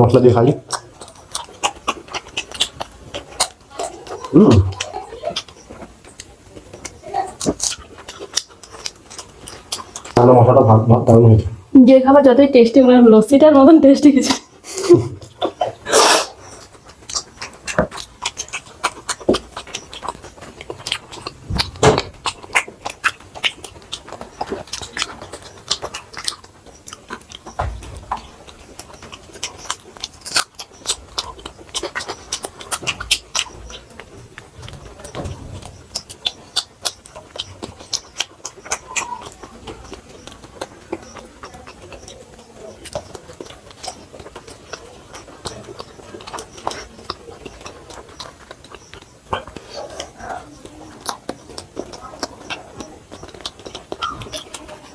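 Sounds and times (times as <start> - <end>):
people chewing food: 0.0 - 54.9
small mouth clicks: 15.2 - 54.9.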